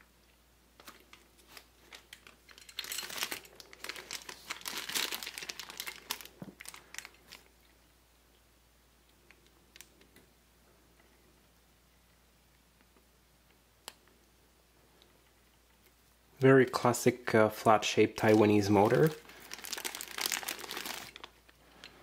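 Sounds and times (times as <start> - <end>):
packaging crinkling and rustling: 0.8 - 7.5, 18.2 - 22.0.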